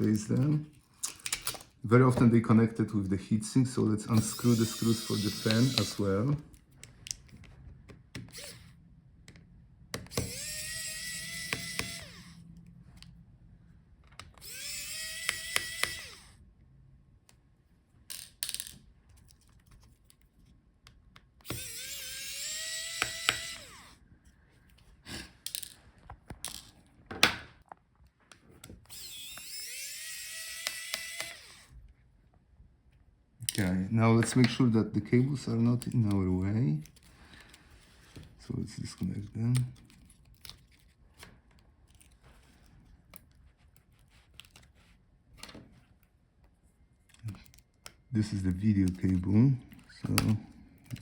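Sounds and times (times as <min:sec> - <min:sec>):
electric screwdriver whining: 0:04.1 - 0:06.4, 0:08.2 - 0:08.8, 0:10.0 - 0:12.4, 0:14.2 - 0:16.4, 0:21.4 - 0:24.0, 0:28.8 - 0:31.8.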